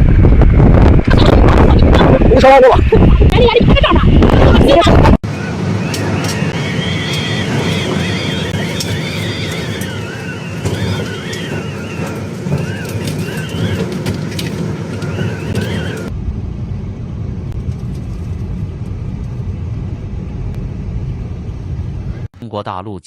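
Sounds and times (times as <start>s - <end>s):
gale-force wind howling: 0.0s - 22.3s
wind buffeting microphone: 0.0s - 22.3s
rattles and ticks: 5.9s - 16.1s.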